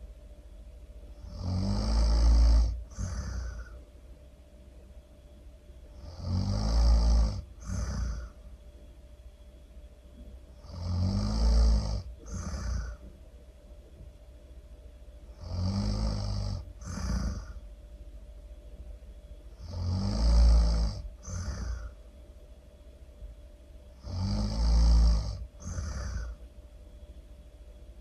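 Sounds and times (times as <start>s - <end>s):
person snoring loudly: 1.2s - 3.8s, 6.0s - 8.4s, 10.6s - 13.1s, 15.3s - 17.6s, 19.6s - 22.0s, 24.0s - 26.4s.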